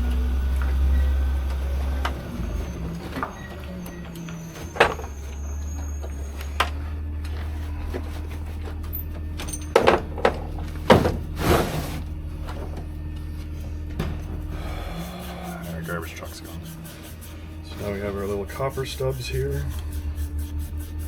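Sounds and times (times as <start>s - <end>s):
garbage truck diesel engine rumble: 0.0s - 21.0s
loud metal clanks and bangs: 13.9s - 15.0s.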